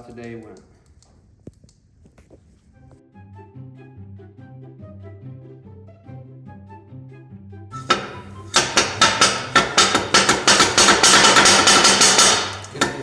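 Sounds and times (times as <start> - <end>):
hammer blows on metal: 7.8 - 13.0.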